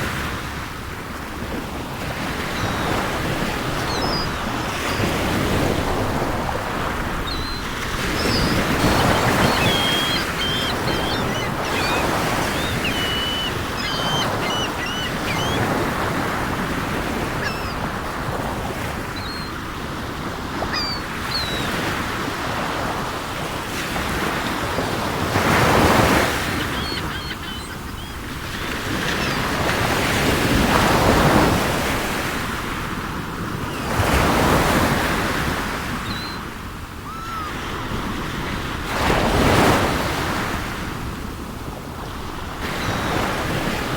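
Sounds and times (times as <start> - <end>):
sea waves breaking: 0.0 - 43.9
seagulls calling: 2.0 - 23.0, 24.0 - 31.9, 33.7 - 38.5, 42.5 - 43.9.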